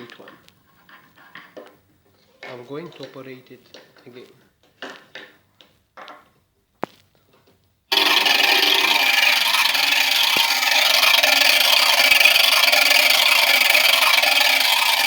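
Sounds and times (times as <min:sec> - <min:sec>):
motorized rotary switch scraping: 0:07.9 - 0:15.0.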